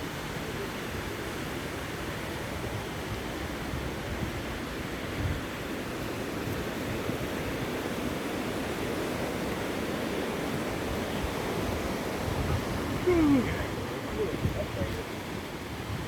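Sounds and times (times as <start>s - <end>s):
waterfall roaring: 7.3s - 16.0s.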